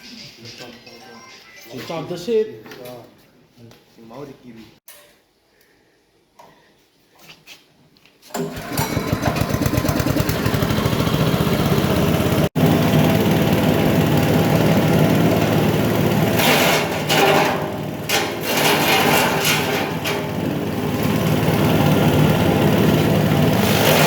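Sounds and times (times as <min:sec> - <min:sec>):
chopper machine motor running: 0:08.4 - 0:24.0.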